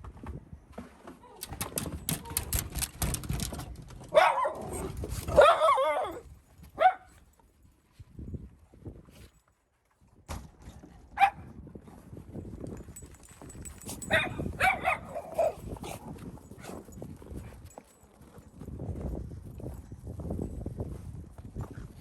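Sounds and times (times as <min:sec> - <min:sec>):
low rustling and thumps: 0:01.4 - 0:05.6
dogs barking: 0:04.1 - 0:06.2, 0:14.0 - 0:15.6.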